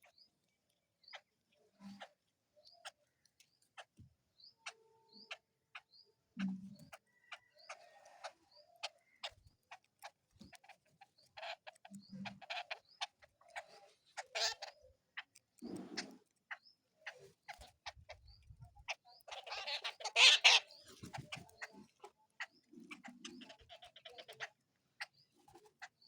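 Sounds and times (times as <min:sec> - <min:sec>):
birds pecking taps: 0:08.8 - 0:18.2, 0:20.7 - 0:22.1.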